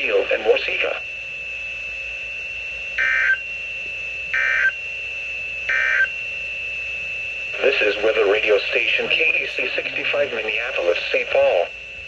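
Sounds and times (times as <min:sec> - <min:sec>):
steady high-pitched whine: 0:00.0 - 0:12.0
digital screeching data bursts: 0:05.7 - 0:06.1.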